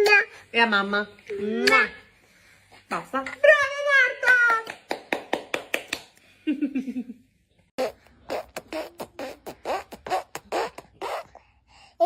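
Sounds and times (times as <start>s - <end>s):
child making mouth sounds: 7.8s - 11.4s.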